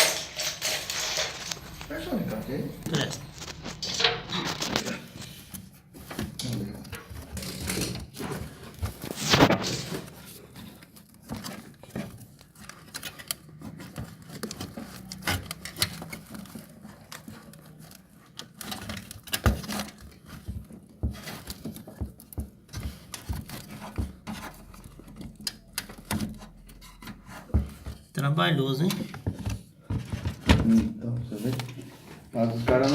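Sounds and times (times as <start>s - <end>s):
tools and parts clicking and knocking: 0.0s - 1.9s, 3.1s - 4.9s, 6.0s - 28.0s.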